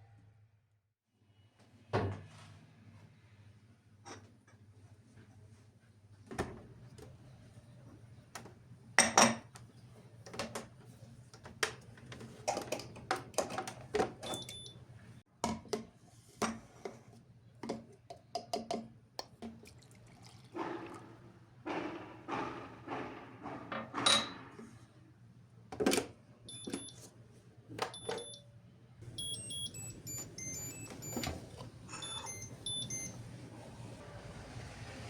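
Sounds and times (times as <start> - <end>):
dishes and cups clinking: 20.3 - 23.2
high electronic beep: 29.2 - 31.3, 32.0 - 33.2.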